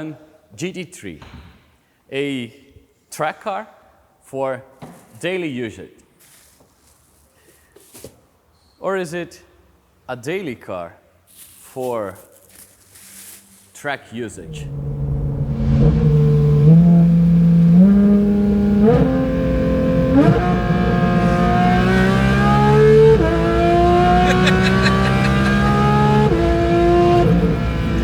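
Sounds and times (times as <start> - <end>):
car engine accelerating hard: 14.4 - 28.0.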